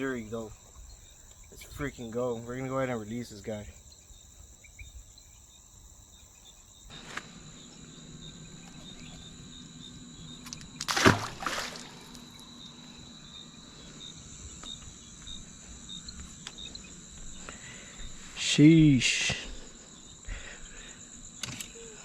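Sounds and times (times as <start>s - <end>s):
insects chirping: 0.0s - 22.0s
loud splash in water: 10.8s - 12.2s.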